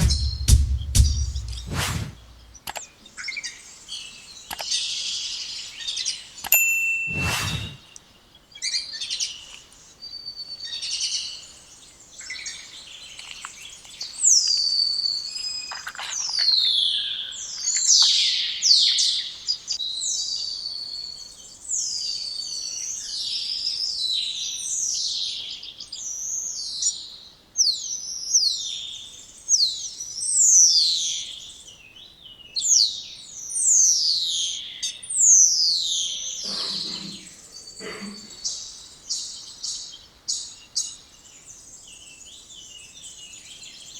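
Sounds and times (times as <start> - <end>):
starling whistling and chattering: 36.4 - 38.6.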